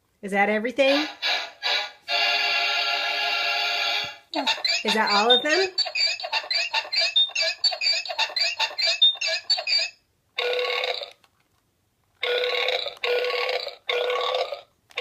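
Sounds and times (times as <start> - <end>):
warbling toy beeps: 4.4 - 11.1.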